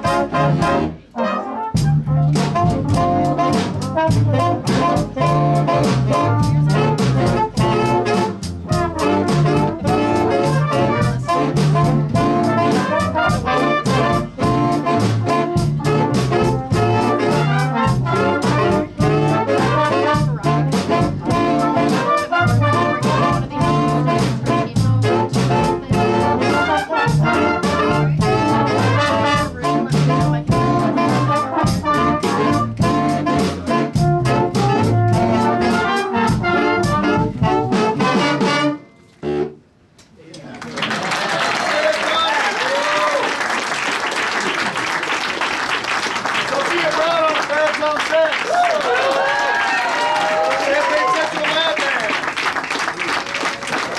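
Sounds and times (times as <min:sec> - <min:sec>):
jazz big band playing: 0:00.0 - 0:39.7.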